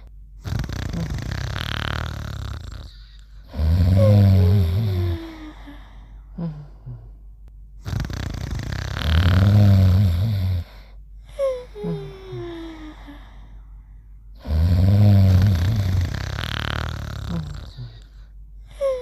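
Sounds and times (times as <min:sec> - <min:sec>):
faint snort: 0:00.4 - 0:05.1, 0:07.8 - 0:10.8, 0:14.4 - 0:18.3.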